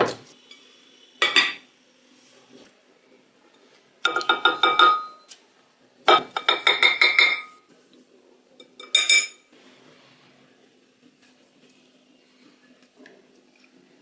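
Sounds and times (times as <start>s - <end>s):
utensil clinking a ringing bowl: 4.1s - 5.3s, 8.6s - 9.4s.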